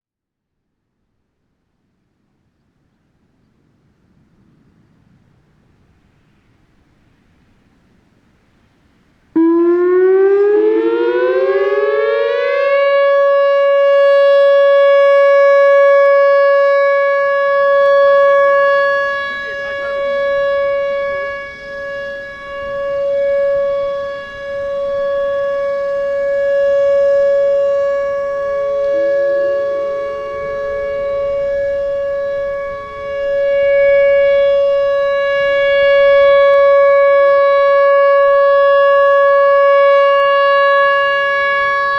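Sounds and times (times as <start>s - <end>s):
outdoor warning siren: 8.4s - 41.9s.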